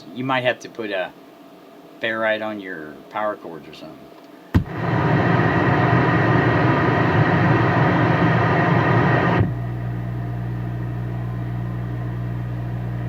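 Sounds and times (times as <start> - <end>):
radio hiss: 4.5 - 9.6
radio carrier buzzing hum: 4.5 - 13.0.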